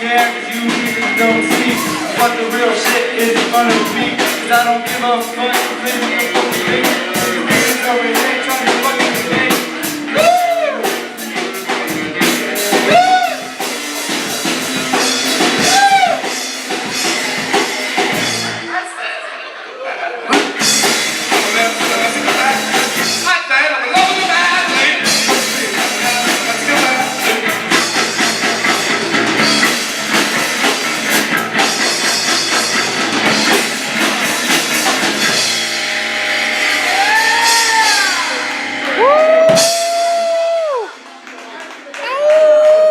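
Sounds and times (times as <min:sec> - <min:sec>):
person singing: 0:00.0 - 0:14.1, 0:20.8 - 0:28.1
music with drum kit: 0:00.0 - 0:18.7, 0:20.3 - 0:40.9.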